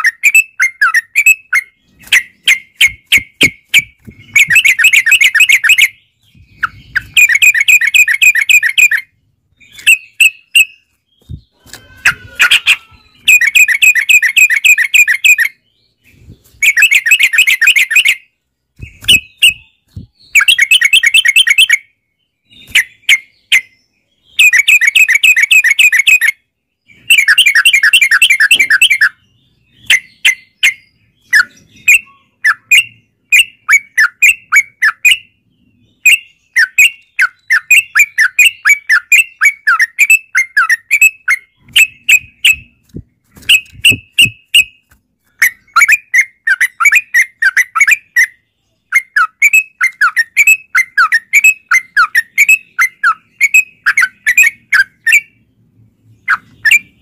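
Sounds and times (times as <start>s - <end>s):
bird chattering song: 0.0s - 57.0s
bird chirps: 0.0s - 57.0s.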